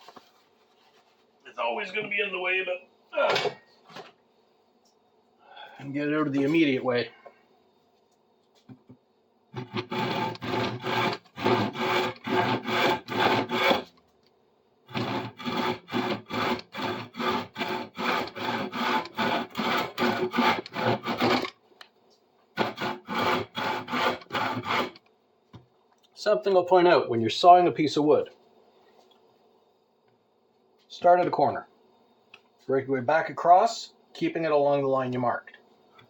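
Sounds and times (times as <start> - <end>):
hand saw cutting wood: 9.6 - 13.9, 14.9 - 21.5, 22.6 - 25.0.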